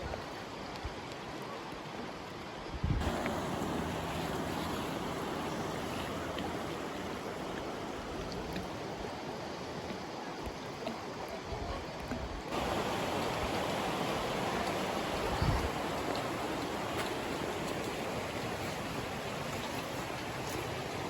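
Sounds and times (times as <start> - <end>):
rushing water: 0.0 - 21.0.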